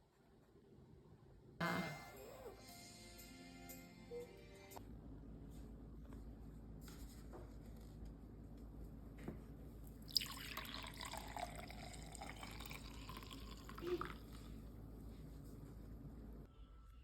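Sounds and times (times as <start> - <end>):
water running: 10.0 - 14.6.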